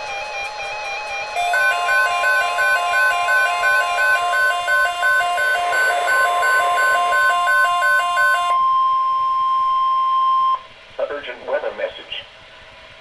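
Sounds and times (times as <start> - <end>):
repeating beeping melody: 0.0 - 8.7
long alarm tone: 0.0 - 10.6.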